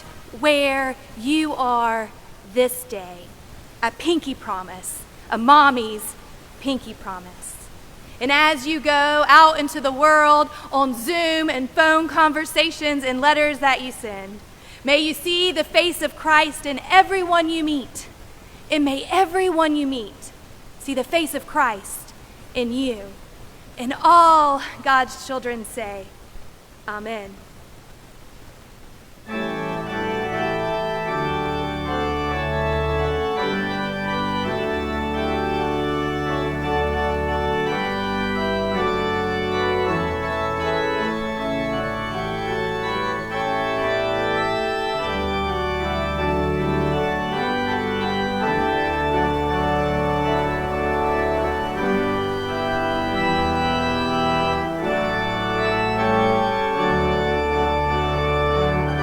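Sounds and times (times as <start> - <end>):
organ playing sustained chords: 29.2 - 59.0.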